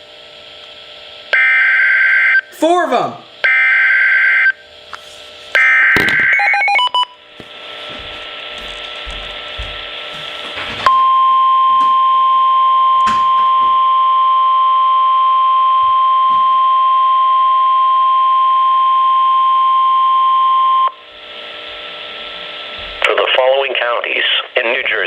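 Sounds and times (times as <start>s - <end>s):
steady alarm tone: 1.3s - 2.6s, 3.4s - 4.8s, 5.5s - 7.2s, 10.9s - 21.1s
weak radio sound: 21.3s - 25.0s.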